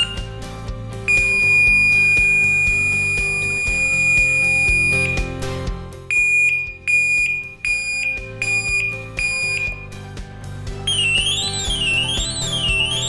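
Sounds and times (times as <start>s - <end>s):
background music: 0.0s - 13.0s
electronic horn pulsed beeps: 6.1s - 9.8s.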